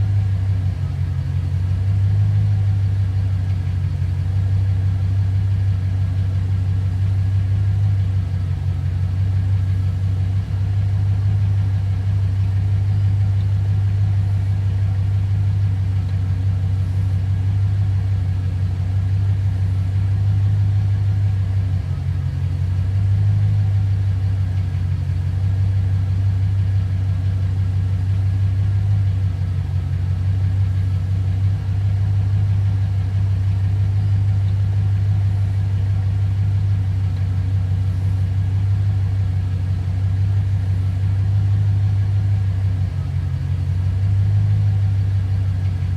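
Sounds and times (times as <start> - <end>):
car engine idling: 0.0 - 45.9.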